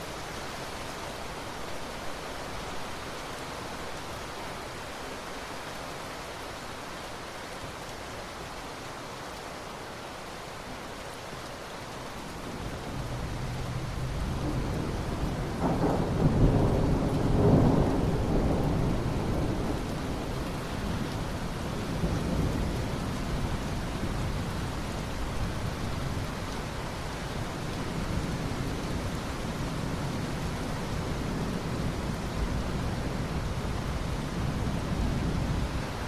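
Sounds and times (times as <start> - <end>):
steady rain: 0.0 - 36.0
thunder rumbling: 13.2 - 21.0.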